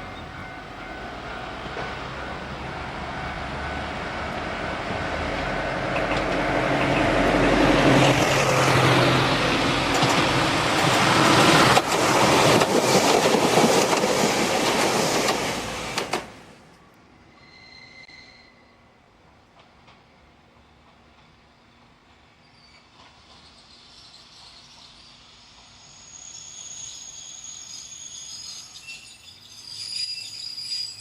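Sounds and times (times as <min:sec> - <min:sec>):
electric train passing: 0:00.0 - 0:31.0
wheels clattering over rail joints: 0:05.2 - 0:16.7.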